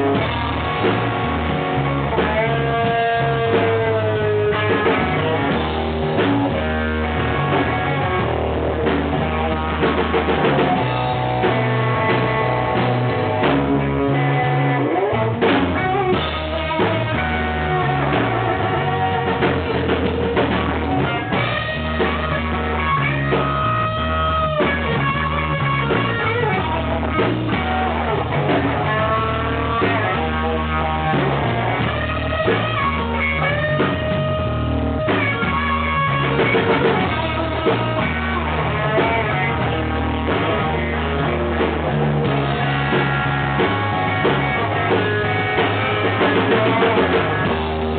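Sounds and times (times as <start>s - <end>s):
bass guitar: 0.0s - 47.9s
drum kit: 0.0s - 47.9s
electric guitar lead: 0.0s - 47.9s.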